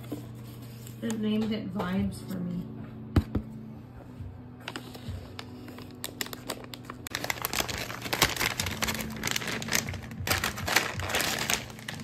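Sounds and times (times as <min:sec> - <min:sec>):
crinkly plastic rustling: 0:04.6 - 0:12.0.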